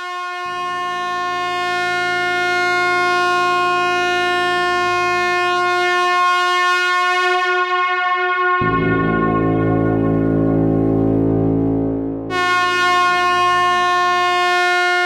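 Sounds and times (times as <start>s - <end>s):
deeper horn tone: 0.5s - 15.0s
truck air horn blast: 6.4s - 15.0s.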